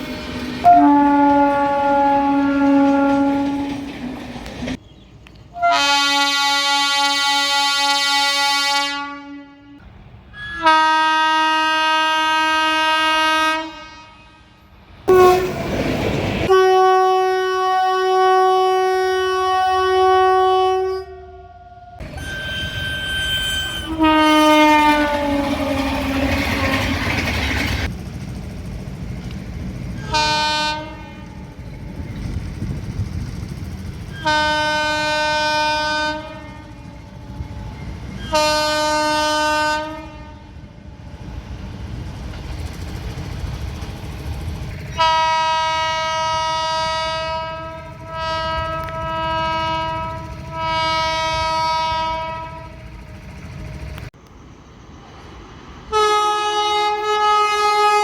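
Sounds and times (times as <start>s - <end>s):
low rumble of trains on track: 0.0s - 58.0s
train passing with loud rush: 0.0s - 58.0s
train horn blasts: 0.6s - 4.0s, 5.6s - 15.8s, 16.5s - 27.1s, 30.0s - 32.1s, 34.1s - 41.3s, 45.0s - 53.4s, 55.9s - 58.0s.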